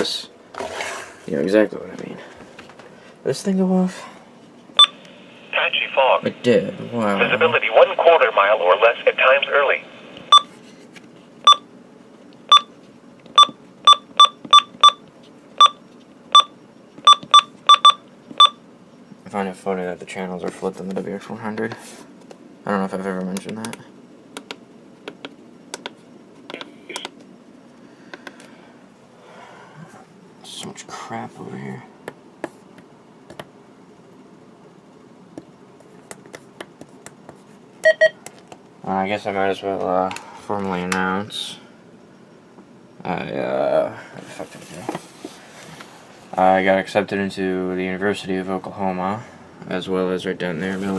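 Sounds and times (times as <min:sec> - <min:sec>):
electronic key beeps: 0:37.8 - 0:38.2.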